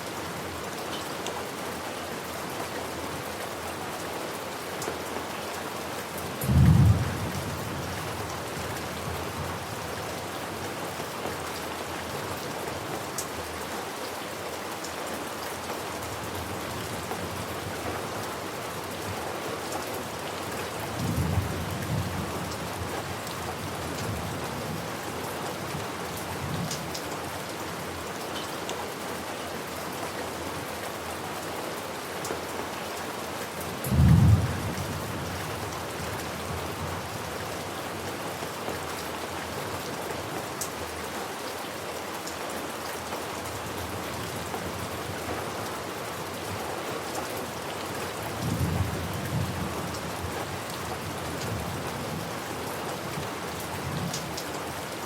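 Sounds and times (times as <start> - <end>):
steady rain falling: 0.0 - 55.0
low thunder rumbles: 6.5 - 8.0.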